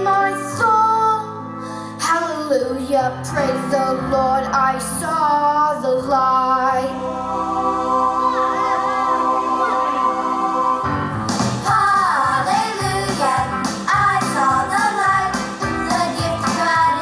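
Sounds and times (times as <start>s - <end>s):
upbeat instrumental gospel band: 8.0s - 17.0s.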